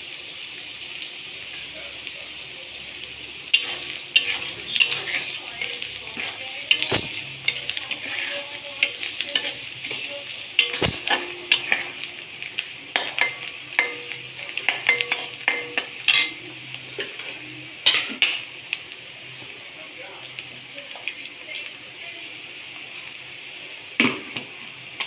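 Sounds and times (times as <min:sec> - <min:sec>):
onions sizzling in oil: 0:00.0 - 0:25.0
spatula scraping a pan: 0:03.5 - 0:18.5.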